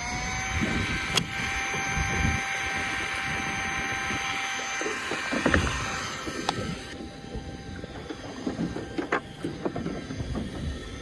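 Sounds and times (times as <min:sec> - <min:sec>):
electric fishing reel motor whine: 0:00.0 - 0:11.0
reel click: 0:01.1 - 0:07.0.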